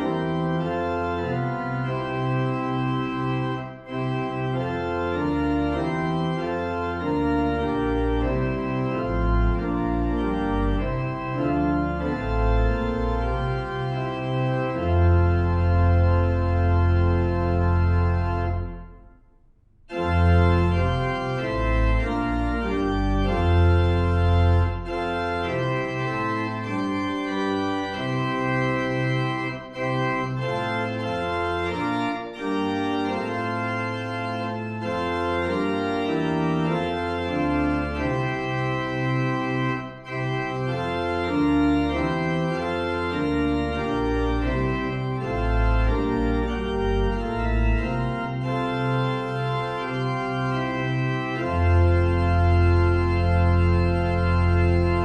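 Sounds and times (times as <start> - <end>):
organ playing held chords: 0.0 - 19.3, 19.9 - 55.0.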